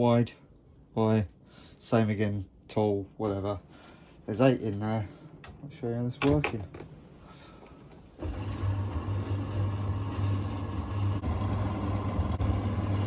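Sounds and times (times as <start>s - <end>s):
tumble dryer running: 8.2s - 13.0s.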